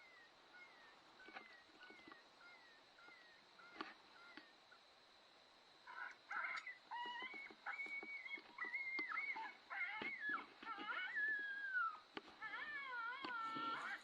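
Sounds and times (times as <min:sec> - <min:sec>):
coyotes yipping and howling: 0:00.0 - 0:14.0.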